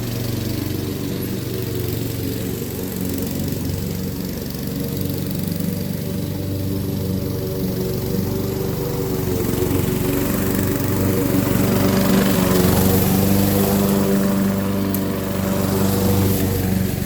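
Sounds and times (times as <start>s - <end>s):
lawn mower engine running: 0.0s - 17.0s
mower cutting thick grass: 0.0s - 17.0s.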